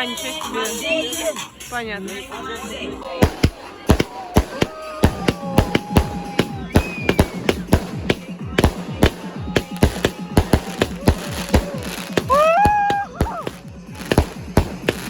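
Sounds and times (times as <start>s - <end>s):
music: 0.0s - 15.0s
fireworks bangs: 3.0s - 15.0s.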